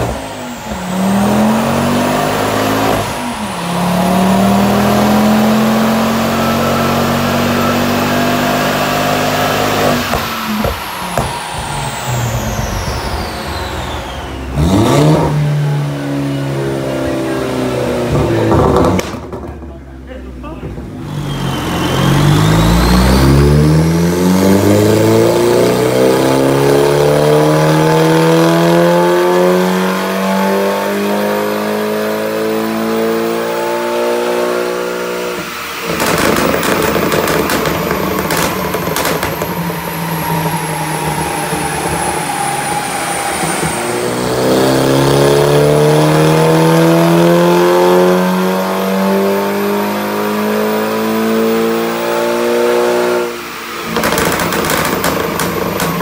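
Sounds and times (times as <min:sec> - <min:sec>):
car engine revving under load: 0:00.0 - 0:56.0
exhaust cracks: 0:17.9 - 0:24.0, 0:35.8 - 0:44.4, 0:53.8 - 0:56.0.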